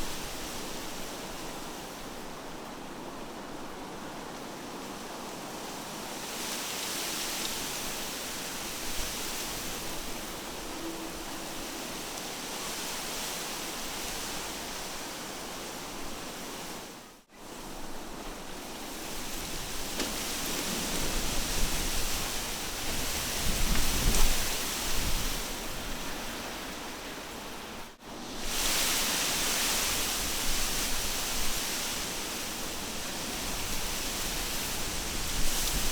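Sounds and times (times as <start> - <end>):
wind rustling through trees: 0.0 - 35.9.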